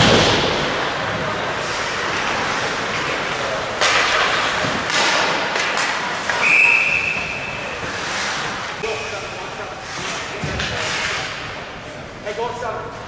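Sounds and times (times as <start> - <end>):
hockey sticks and puck knocking: 0.0 - 8.9
arena noise: 0.0 - 13.0
referee's whistle: 6.4 - 7.6.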